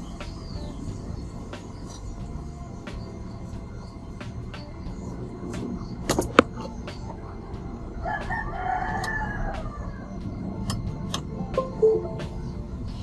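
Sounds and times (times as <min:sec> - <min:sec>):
low background hum: 0:00.0 - 0:13.0
rooster crowing: 0:07.8 - 0:10.4.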